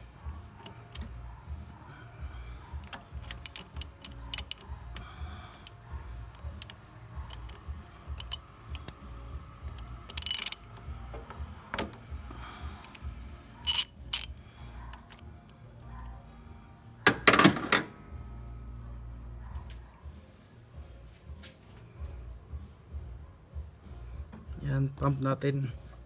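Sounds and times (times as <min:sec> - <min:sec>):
hand tools clicking on metal: 0:02.9 - 0:05.8, 0:06.6 - 0:07.6, 0:08.2 - 0:09.0, 0:09.8 - 0:10.6, 0:13.7 - 0:14.4
ratchet burst: 0:03.4 - 0:04.6, 0:08.2 - 0:09.0, 0:10.1 - 0:10.6, 0:13.7 - 0:14.3.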